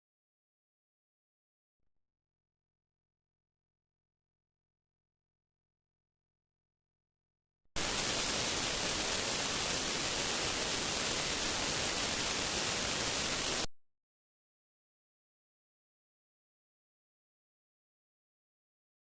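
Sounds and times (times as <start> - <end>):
static hiss: 7.8 - 13.7.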